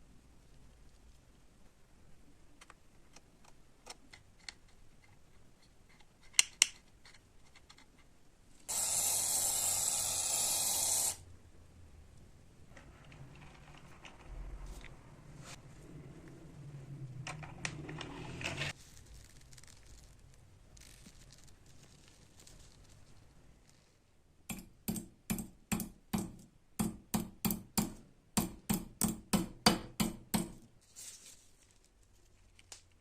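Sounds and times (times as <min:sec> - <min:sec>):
cutting machine strokes: 0:08.7 - 0:11.2.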